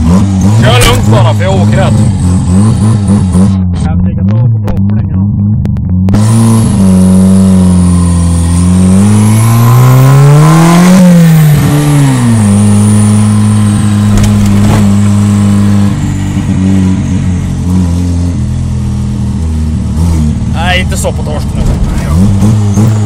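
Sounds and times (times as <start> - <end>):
car engine accelerating: 0.0 - 23.0.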